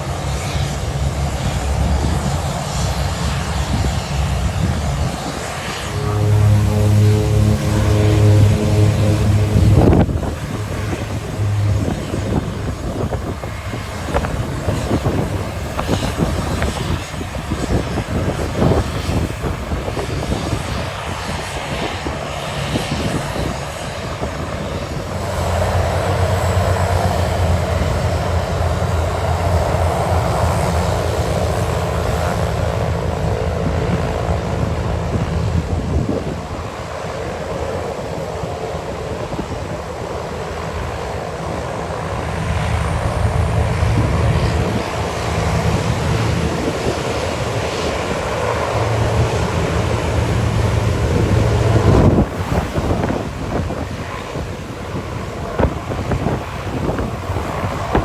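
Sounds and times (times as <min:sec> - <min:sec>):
propeller airplane engine drone: 0:00.0 - 0:58.0.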